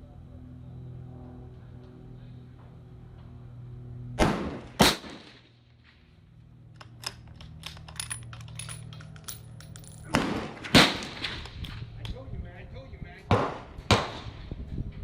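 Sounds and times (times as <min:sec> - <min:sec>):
rifle shots: 0:04.2 - 0:05.4, 0:10.1 - 0:11.4, 0:13.3 - 0:14.3.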